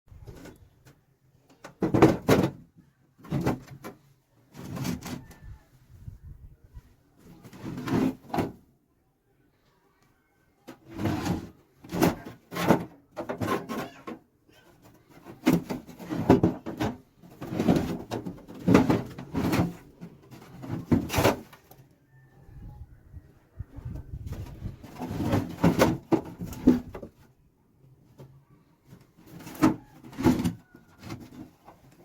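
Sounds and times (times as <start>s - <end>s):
metal toolbox scraping and clanking: 7.2s - 8.6s, 10.7s - 21.7s, 24.2s - 27.2s, 28.9s - 32.0s.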